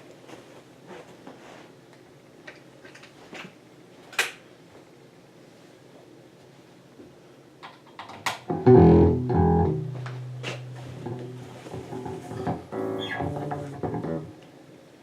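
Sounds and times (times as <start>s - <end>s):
electric bass plucked notes: 8.5s - 14.4s.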